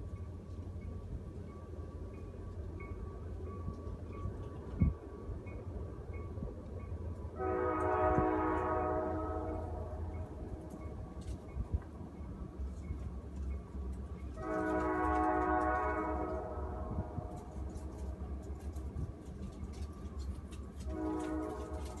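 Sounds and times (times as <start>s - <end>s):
low wind rumble: 0.0s - 22.0s
distant train horn: 7.3s - 11.0s, 14.2s - 18.3s, 20.7s - 22.0s.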